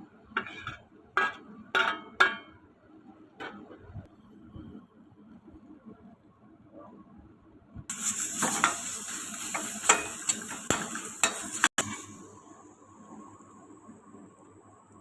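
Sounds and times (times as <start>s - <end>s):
spatula scraping and knocking pan: 0.3s - 2.6s, 3.4s - 3.8s, 7.9s - 12.1s
stir-fry sizzling in a pan: 7.9s - 12.5s.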